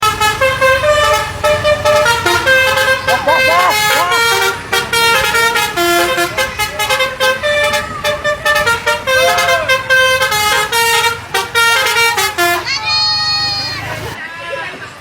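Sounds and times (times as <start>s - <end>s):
multi-tone bus horn melody: 0.0s - 14.1s.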